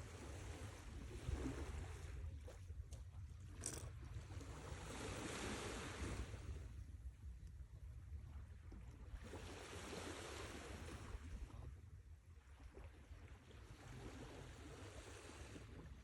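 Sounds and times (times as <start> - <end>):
low rumble of surf: 0.0 - 16.0
sea waves washing in: 4.6 - 6.7, 9.2 - 11.4.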